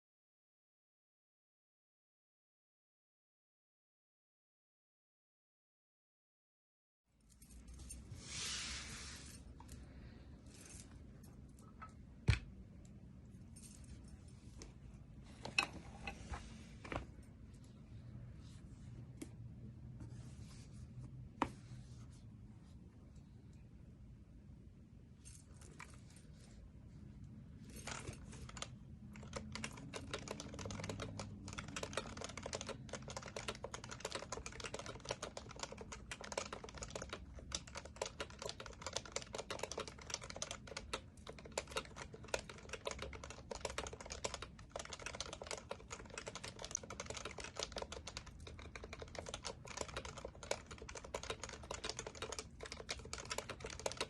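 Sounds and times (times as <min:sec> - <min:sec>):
keyboard typing: 0:27.8 - 0:54.0.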